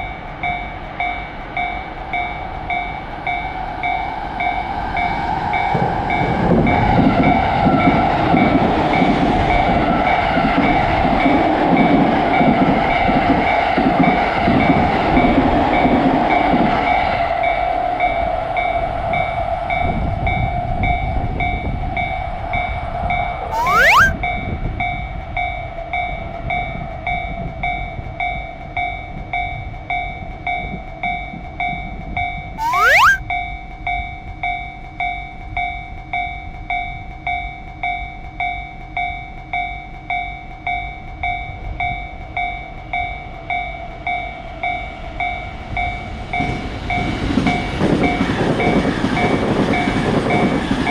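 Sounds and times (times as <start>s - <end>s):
train running past: 0.0s - 23.1s, 42.8s - 50.9s
short rising whistles: 23.5s - 24.2s, 32.6s - 33.2s.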